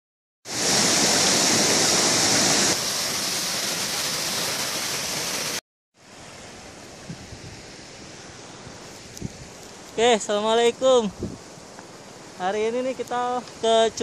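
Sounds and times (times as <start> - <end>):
waterfall rushing: 0.5 - 5.6.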